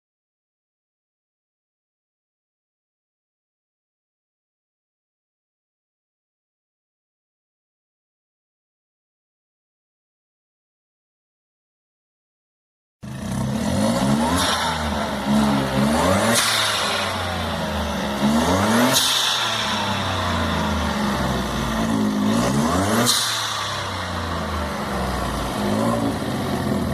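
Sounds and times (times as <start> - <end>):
car engine revving: 13.0 - 26.9.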